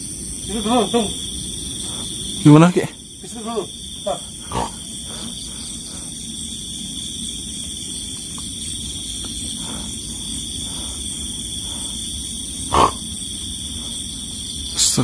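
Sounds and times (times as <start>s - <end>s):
steady high-pitched drone: 0.0s - 15.0s
low animal-like growling: 4.1s - 5.4s, 12.6s - 14.0s.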